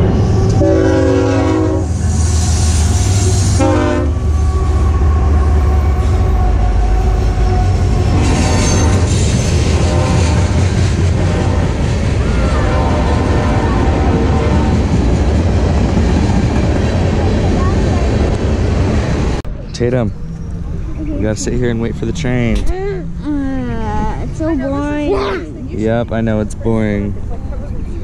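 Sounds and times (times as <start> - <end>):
train horn blasts: 0.0 - 2.0, 3.5 - 14.9
train rumbling and clattering: 0.0 - 28.0.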